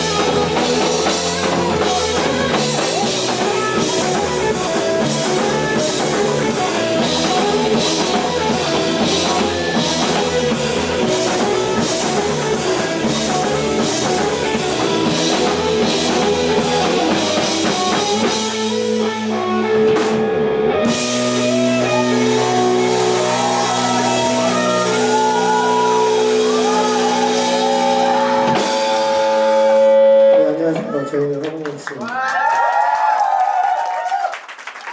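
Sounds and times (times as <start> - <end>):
drum kit with cymbals: 0.0 - 30.2
bass guitar: 0.0 - 31.0
electric guitars: 0.0 - 31.9.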